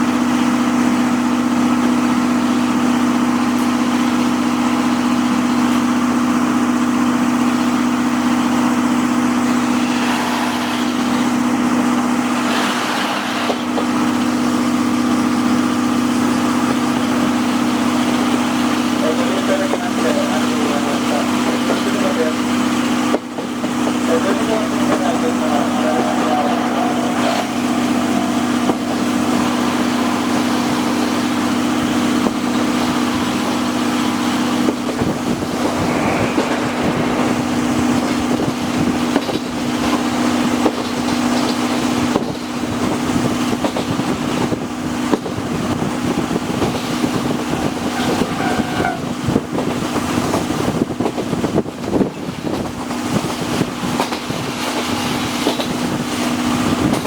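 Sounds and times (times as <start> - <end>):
train running low hum: 0.0 - 57.0
wheel clacks and rattles: 39.2 - 57.0.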